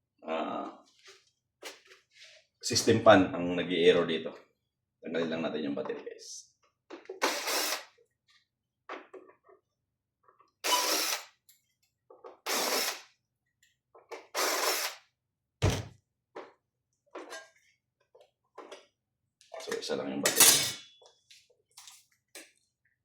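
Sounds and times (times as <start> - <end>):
dull thunk: 15.6 - 15.9.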